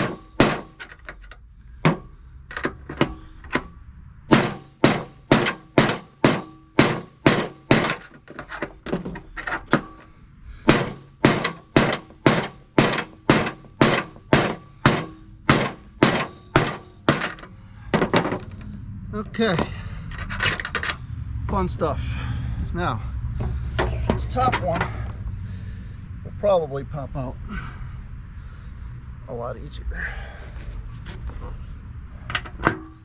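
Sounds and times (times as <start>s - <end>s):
hammer striking metal: 0.0s - 0.8s, 4.3s - 8.1s, 9.7s - 17.4s.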